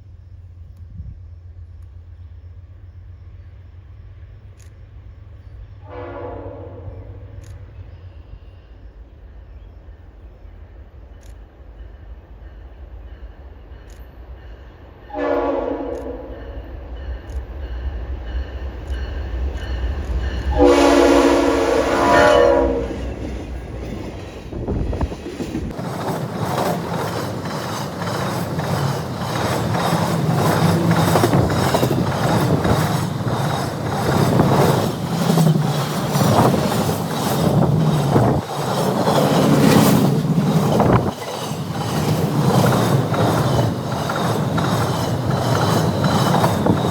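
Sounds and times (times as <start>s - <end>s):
train horn blasts: 5.8s - 7.3s, 15.1s - 16.7s, 20.4s - 23.2s
train wheels clicking over rails: 15.8s - 46.9s.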